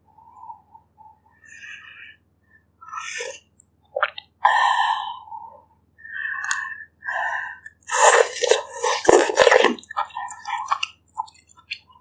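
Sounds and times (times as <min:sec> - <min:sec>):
person slurping broth: 0:07.9 - 0:10.9.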